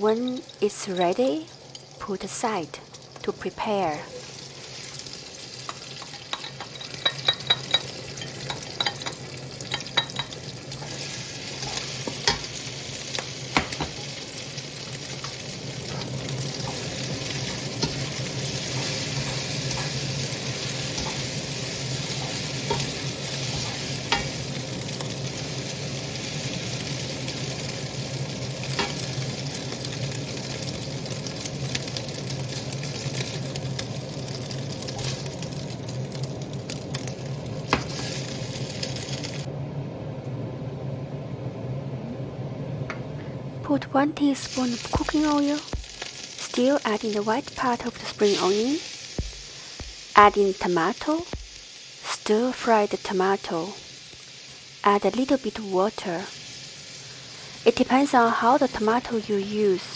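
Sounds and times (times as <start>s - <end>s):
eggs sizzling in hot oil: 0.0s - 39.5s, 44.2s - 59.9s
spatula clinking and scraping pan: 5.7s - 12.5s, 22.0s - 25.0s.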